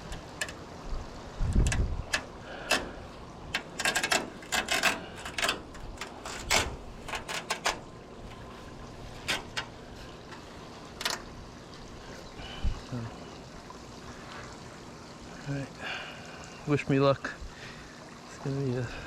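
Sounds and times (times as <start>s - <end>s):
handling clicks and rustles: 0.0s - 12.3s
steady outdoor hiss: 0.0s - 19.0s.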